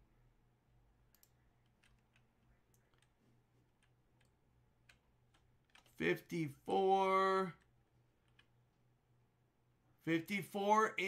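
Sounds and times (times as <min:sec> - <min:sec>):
computer keys clicking: 0:01.1 - 0:06.0, 0:07.6 - 0:08.5.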